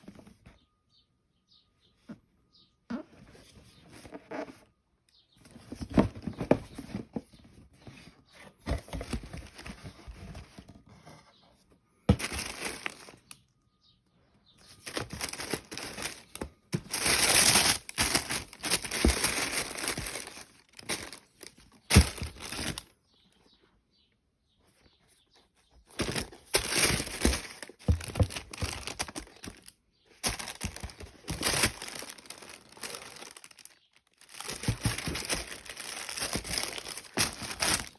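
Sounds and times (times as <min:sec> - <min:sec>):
paper crinkling and tearing: 0:14.8 - 0:22.9, 0:26.0 - 0:37.9.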